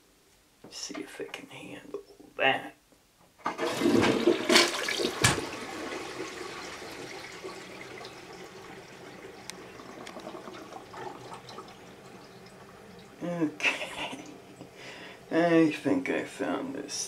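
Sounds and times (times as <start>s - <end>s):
water churning in toilet bowl: 3.4s - 14.7s
toilet flushing: 3.4s - 15.6s.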